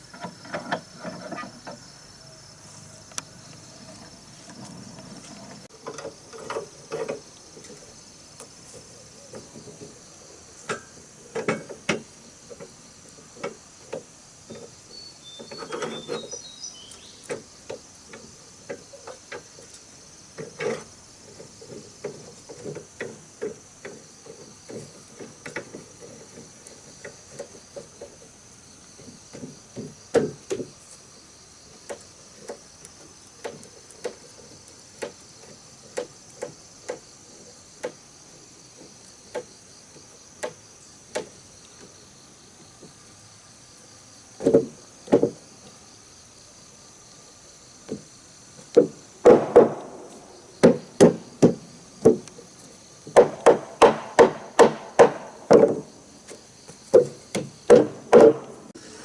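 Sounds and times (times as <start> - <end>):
high insect chorus: 0.0 - 59.0
hand tool striking wood: 29.0 - 30.7, 44.4 - 45.4, 47.9 - 52.4, 53.1 - 58.7.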